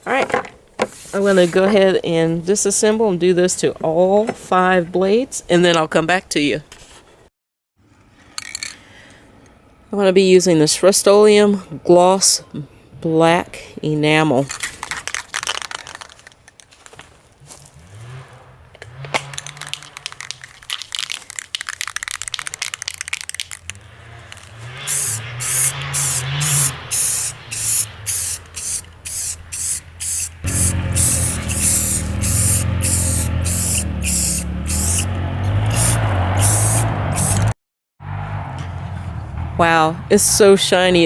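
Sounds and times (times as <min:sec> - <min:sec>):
crackly clicking: 0:19.2 - 0:23.8
aerosol can spraying: 0:24.8 - 0:37.5.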